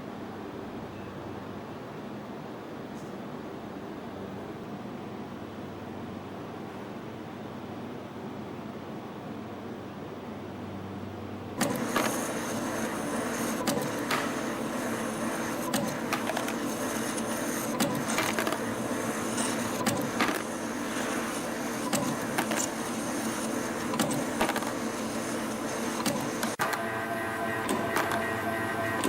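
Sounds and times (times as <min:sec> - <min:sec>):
low machine hum: 0:10.5 - 0:29.0.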